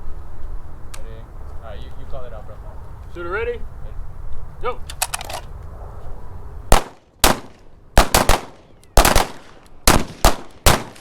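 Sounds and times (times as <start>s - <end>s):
rapid gunshots: 6.7s - 11.0s.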